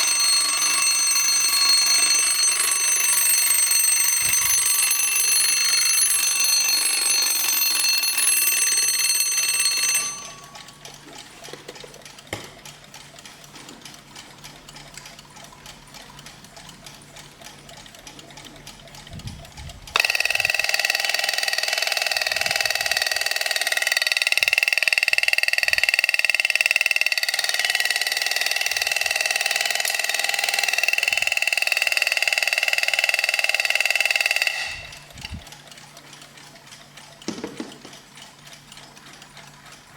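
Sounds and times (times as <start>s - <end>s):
alarm clock ringing: 0.0s - 11.7s, 19.9s - 35.3s
clock ticking: 0.0s - 39.9s.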